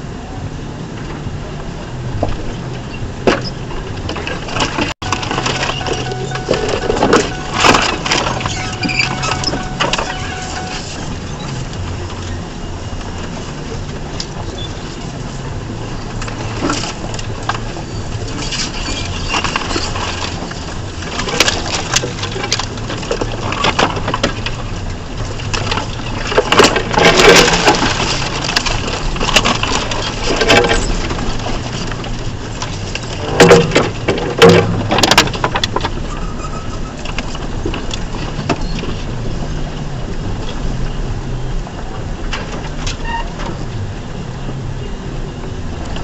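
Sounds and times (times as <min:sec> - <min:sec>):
truck engine droning: 0:00.0 - 0:46.0
truck knocking and clattering: 0:00.0 - 0:46.0.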